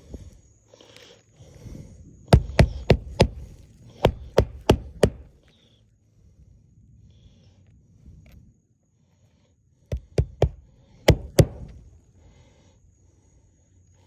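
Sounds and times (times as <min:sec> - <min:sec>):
sharp knocks on something solid: 0:02.3 - 0:03.4, 0:09.9 - 0:11.7.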